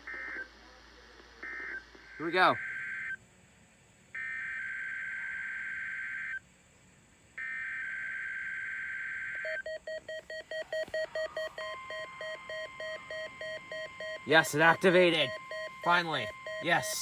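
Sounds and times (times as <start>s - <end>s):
rapid alarm beeping: 9.4s - 17.0s
warbling data tones: 9.4s - 17.0s
steady tone: 9.5s - 17.0s.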